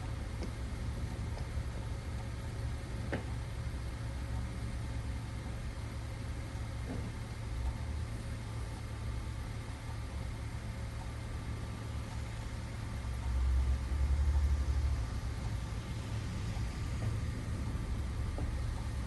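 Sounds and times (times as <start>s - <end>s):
car engine running: 10.1s - 19.0s.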